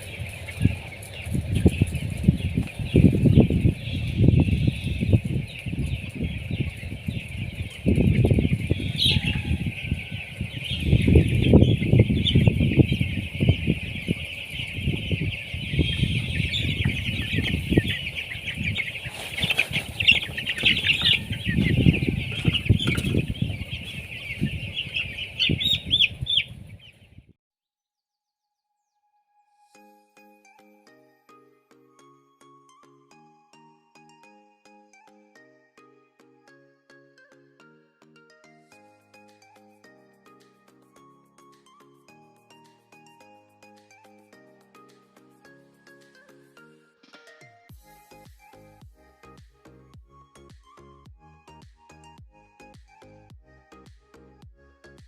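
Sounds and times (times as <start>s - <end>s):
chickens peeping: 0.0s - 27.3s.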